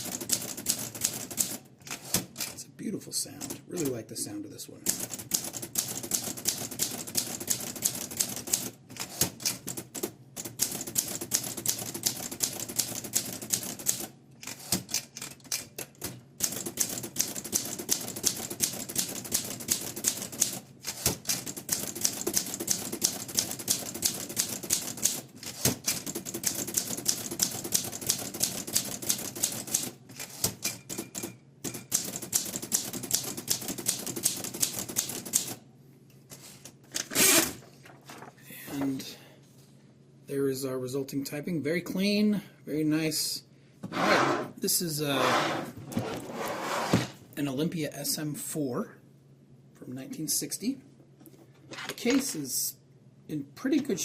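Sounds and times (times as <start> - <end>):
manual typewriter typing: 0.0 - 2.6, 3.3 - 4.0, 4.8 - 35.6.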